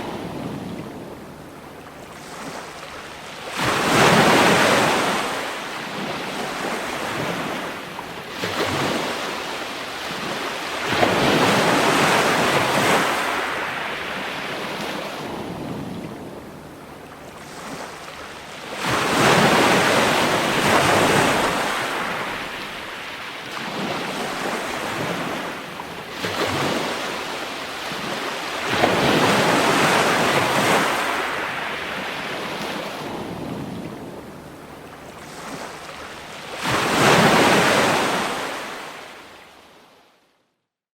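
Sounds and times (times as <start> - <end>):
ocean waves breaking: 0.0 - 40.0.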